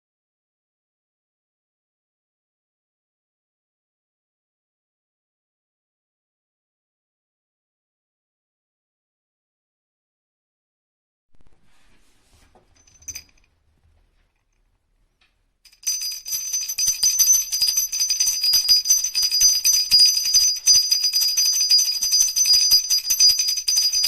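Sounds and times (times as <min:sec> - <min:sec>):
faint handling: 0:11.4 - 0:16.2
sleigh bells jingling: 0:12.8 - 0:13.5, 0:15.7 - 0:24.0.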